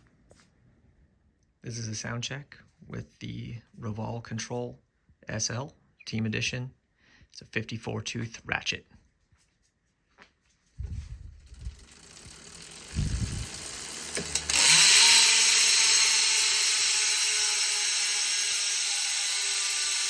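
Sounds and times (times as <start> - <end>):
bicycle hub freewheeling buzz: 11.1 - 20.0.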